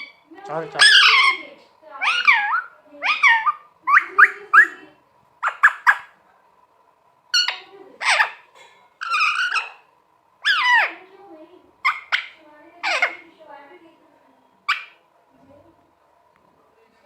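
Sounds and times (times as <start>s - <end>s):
parrot calling: 0.0s - 6.2s, 7.3s - 11.1s, 11.8s - 13.3s, 14.6s - 15.1s.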